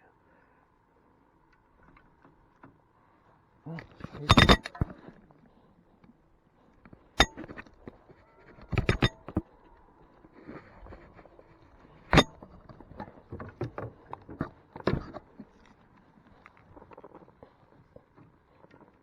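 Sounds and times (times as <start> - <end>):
sharp knocks and clicks in boat: 3.8 - 5.2, 6.9 - 9.5, 11.9 - 16.0.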